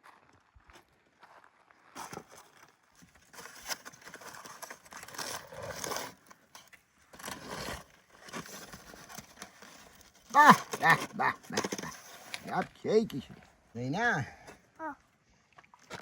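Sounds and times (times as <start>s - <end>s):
scraping and rustling handling: 2.0s - 13.6s.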